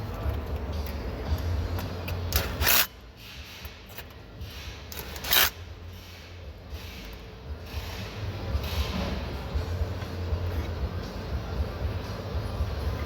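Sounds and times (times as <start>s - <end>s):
parts scraping and rubbing: 0.0s - 9.3s.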